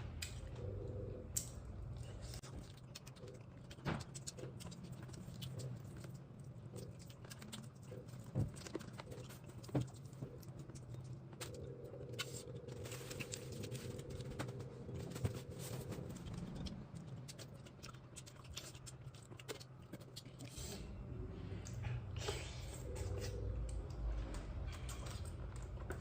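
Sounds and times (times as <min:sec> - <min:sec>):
low hum: 0:00.0 - 0:18.8, 0:20.6 - 0:26.0
person chewing: 0:00.2 - 0:21.0.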